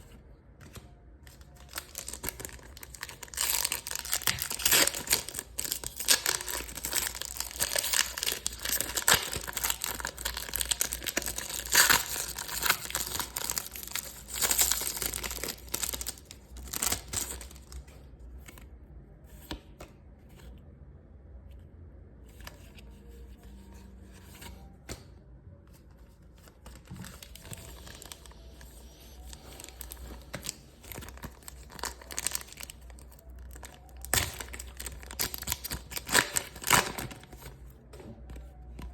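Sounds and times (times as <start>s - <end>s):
packaging tearing and crinkling: 1.5s - 17.8s, 29.1s - 37.5s.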